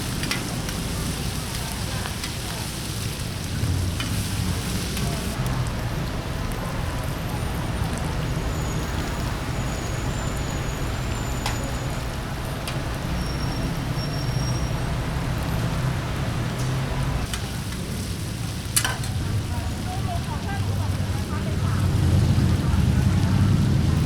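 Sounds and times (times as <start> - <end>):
utensils clicking on wok: 0.0 - 5.4, 16.6 - 19.7
food sizzling: 0.0 - 24.0
gas burner rumbling: 0.0 - 24.0.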